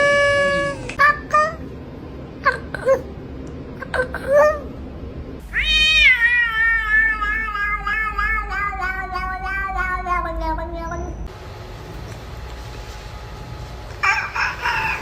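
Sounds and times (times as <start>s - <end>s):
cats meowing: 5.4s - 11.3s.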